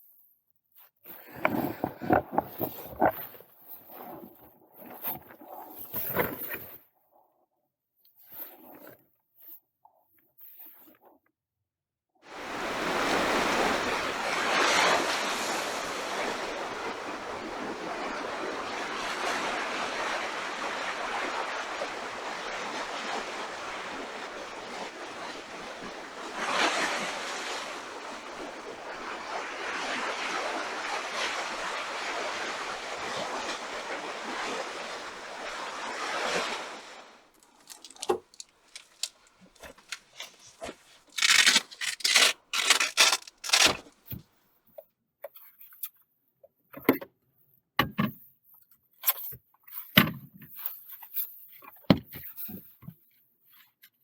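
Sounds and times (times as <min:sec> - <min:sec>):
ocean waves breaking on shore: 0:12.3 - 0:38.4
small clicks and knocks: 0:37.4 - 0:40.3.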